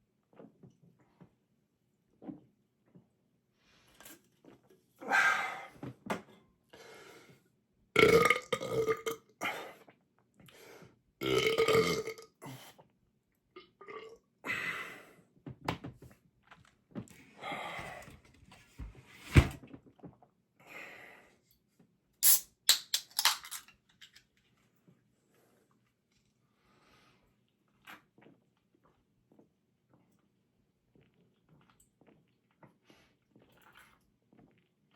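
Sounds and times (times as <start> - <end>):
man belching loudly: 8.0 - 9.2, 11.2 - 12.2.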